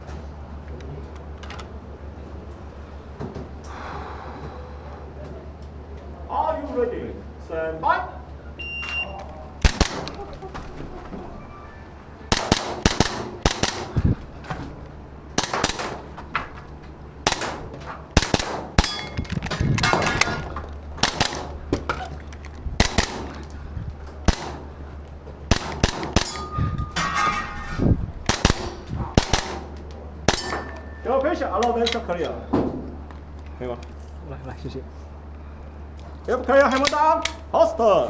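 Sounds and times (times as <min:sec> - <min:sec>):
airsoft pistol shots: 0:09.6 - 0:10.7, 0:12.3 - 0:14.6, 0:15.4 - 0:16.4, 0:17.2 - 0:22.1, 0:22.8 - 0:23.6, 0:24.2 - 0:24.8, 0:25.5 - 0:26.7, 0:28.3 - 0:31.0
pellets clanging on metal targets: 0:17.3 - 0:23.5, 0:25.5 - 0:32.4.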